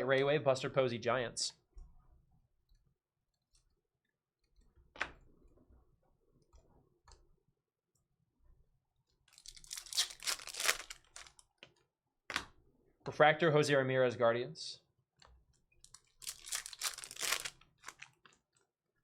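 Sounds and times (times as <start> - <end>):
foil pack tearing open: 9.4 - 11.3, 16.2 - 18.1.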